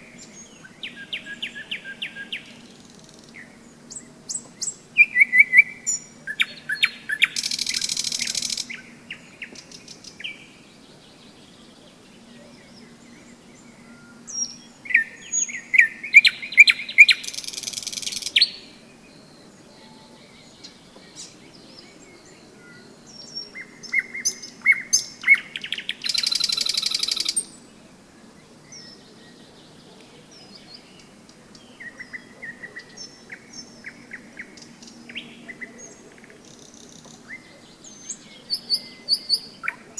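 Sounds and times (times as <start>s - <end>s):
nightingale singing: 0.0s - 39.9s
rapid rattling bird trill: 4.6s - 8.8s, 14.1s - 18.6s, 23.9s - 27.5s.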